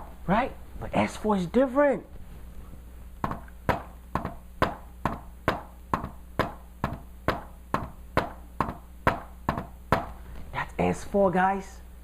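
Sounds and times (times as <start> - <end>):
hand tapping stethoscope chestpiece: 3.2 - 10.2.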